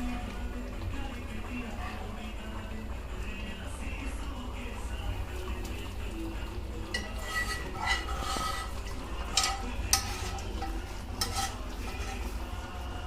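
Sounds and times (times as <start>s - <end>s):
metal spoon stirring in a pan: 6.7s - 13.0s
spoon clinking against pan: 6.9s - 12.2s.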